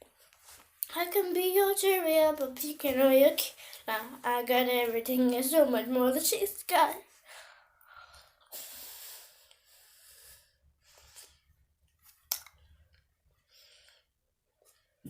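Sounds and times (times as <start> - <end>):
person breathing close to microphone: 3.5 - 3.9, 7.1 - 11.6.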